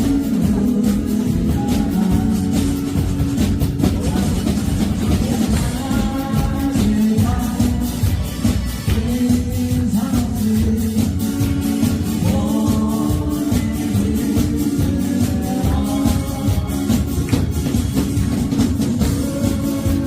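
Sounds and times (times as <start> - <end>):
person singing: 0.0 - 3.1, 3.8 - 17.6, 18.8 - 20.0
upbeat dance-pop song: 4.0 - 17.4.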